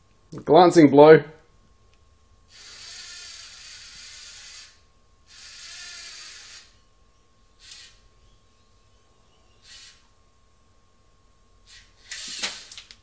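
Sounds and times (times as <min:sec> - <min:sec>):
servo motors and gears whirring: 0:02.4 - 0:06.8, 0:07.5 - 0:08.4, 0:11.6 - 0:12.9.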